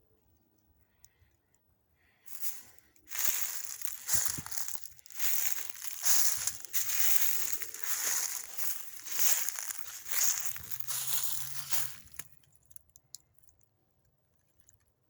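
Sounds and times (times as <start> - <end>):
footsteps crunching dry leaves: 2.3 - 12.3.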